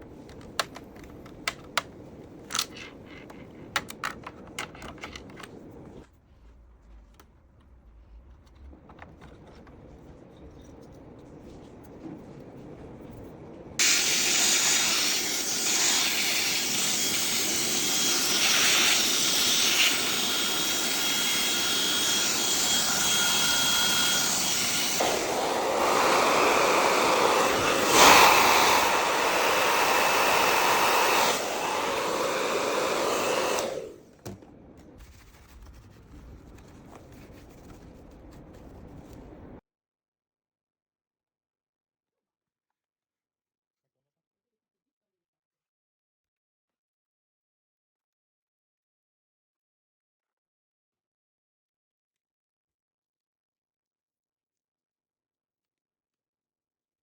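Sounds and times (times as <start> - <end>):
electric air-cleaning tool running: 13.8 - 34.1.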